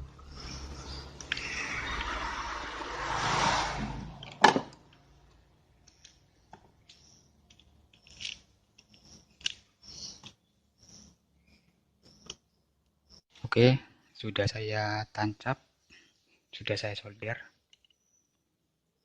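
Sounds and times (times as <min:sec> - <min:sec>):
small clicks and taps of tools: 0:05.8 - 0:10.4, 0:17.7 - 0:18.4.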